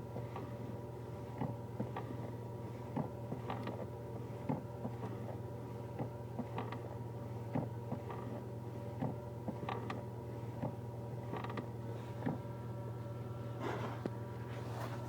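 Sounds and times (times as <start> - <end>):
steady low hum: 0.0 - 15.0
clutch pedal creaking: 11.3 - 12.4.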